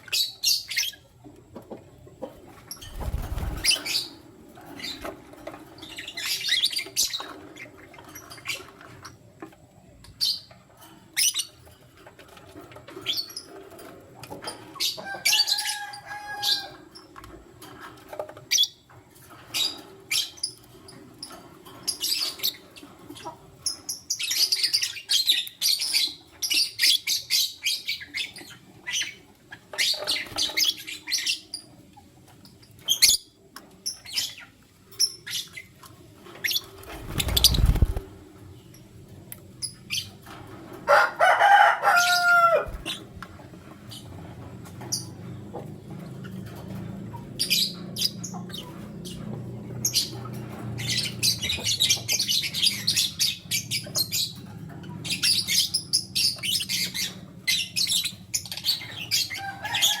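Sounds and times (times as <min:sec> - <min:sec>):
wings fluttering: 0:02.5 - 0:05.9, 0:36.2 - 0:38.5, 0:42.2 - 0:43.2.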